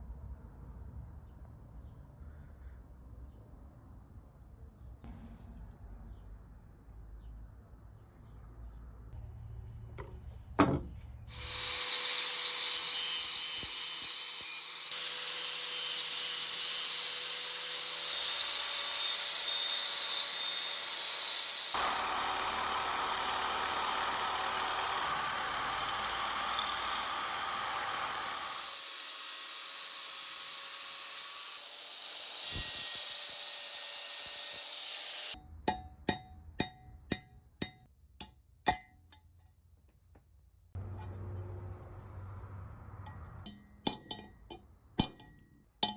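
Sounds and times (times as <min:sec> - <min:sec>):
power tool scraping metal: 0:11.3 - 0:35.4.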